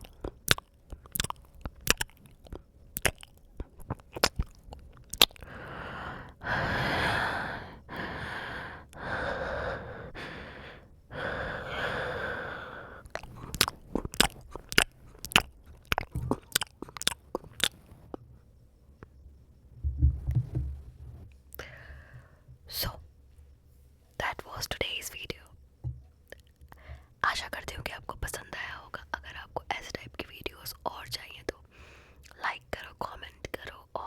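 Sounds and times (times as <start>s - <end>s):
tongue and lip clicks: 0.0s - 6.4s, 13.0s - 18.3s, 26.3s - 27.5s
breathy sounds: 5.2s - 15.5s, 21.5s - 22.5s.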